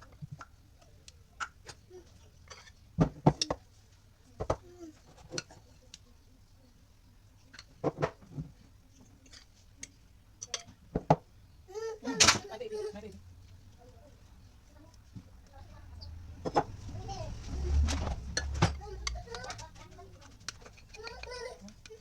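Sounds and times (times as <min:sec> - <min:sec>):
sharp knocks and clatters: 0:16.3 - 0:22.0.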